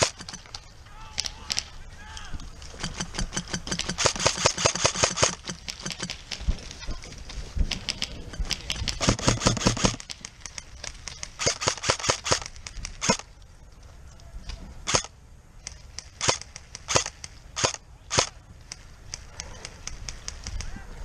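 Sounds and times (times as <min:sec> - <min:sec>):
airsoft gun full-auto bursts: 0:00.0 - 0:00.5, 0:02.8 - 0:06.2, 0:07.8 - 0:13.3, 0:14.9 - 0:15.1, 0:16.0 - 0:18.4.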